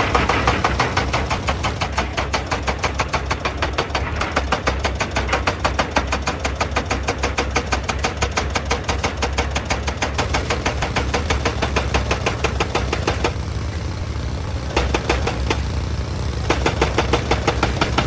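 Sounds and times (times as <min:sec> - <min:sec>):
diesel engine droning: 0:00.0 - 0:05.0, 0:09.6 - 0:18.0
rapid hammering: 0:00.0 - 0:13.6, 0:14.6 - 0:15.8, 0:16.4 - 0:18.0.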